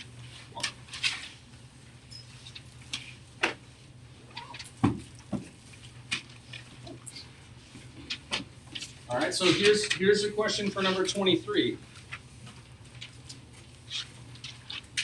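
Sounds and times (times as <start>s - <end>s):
steady low hum: 0.0s - 15.0s
papers rustling: 4.4s - 15.0s.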